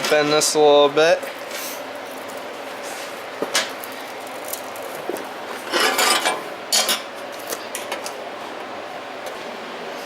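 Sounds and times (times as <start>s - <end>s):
metal scraping and rubbing: 5.6s - 6.4s.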